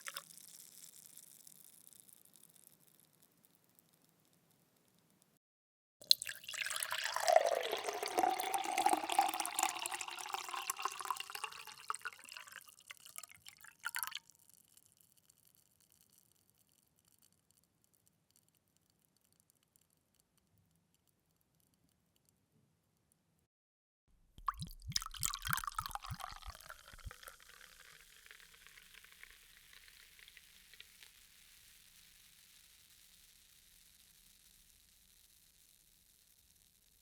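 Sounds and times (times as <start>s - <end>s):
water pouring into a glass: 0.0s - 0.2s, 6.0s - 14.2s, 24.4s - 30.0s.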